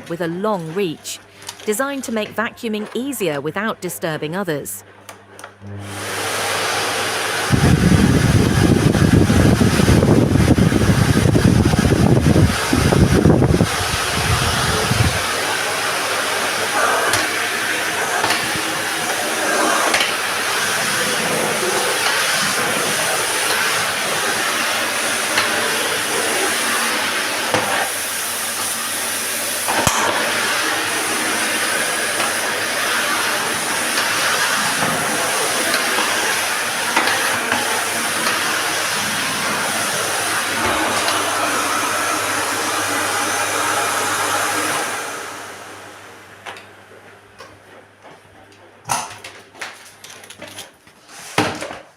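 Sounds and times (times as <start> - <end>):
vacuum cleaner running: 5.4 - 47.8.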